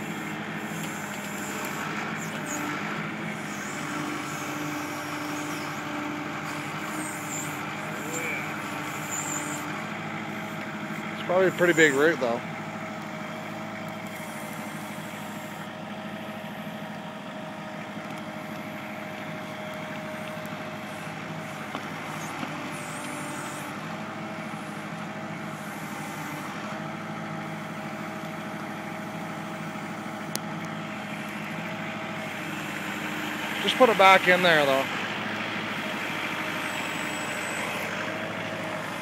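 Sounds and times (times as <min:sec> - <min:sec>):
tractor diesel engine running: 0:00.0 - 0:39.0
thin steady whine: 0:06.4 - 0:12.4.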